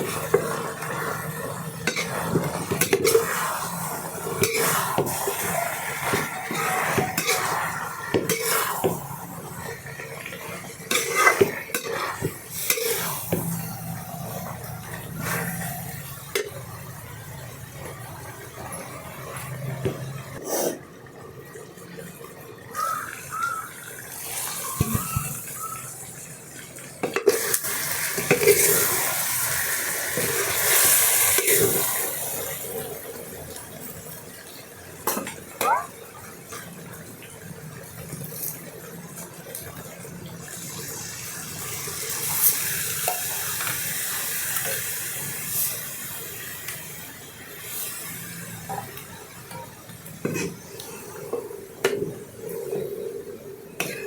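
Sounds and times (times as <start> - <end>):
curry paste sizzling: 0.0 - 20.4, 22.8 - 33.9, 36.7 - 52.6
spoon scraping in a pot: 1.8 - 3.7, 4.4 - 9.0, 10.9 - 13.4.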